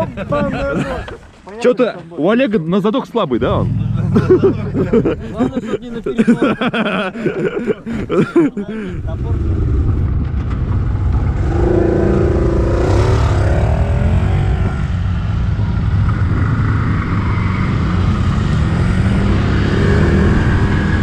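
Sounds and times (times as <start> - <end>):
quad bike engine revving: 3.4 - 5.5, 9.0 - 21.0.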